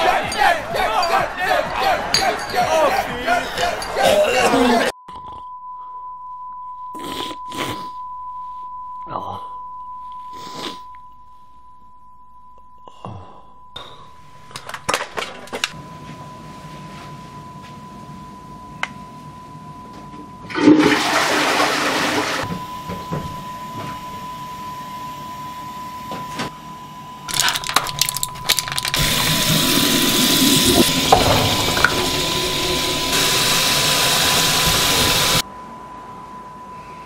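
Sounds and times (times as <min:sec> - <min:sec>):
steady high-pitched tone: 0:22.4 - 0:27.4, 0:28.3 - 0:37.0
rushing water: 0:29.0 - 0:35.4.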